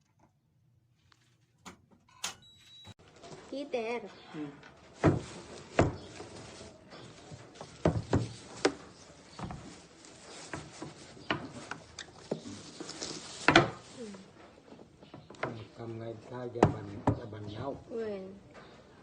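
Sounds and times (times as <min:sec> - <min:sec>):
hard objects knocking and clicking: 0:14.9 - 0:15.8, 0:16.6 - 0:17.6.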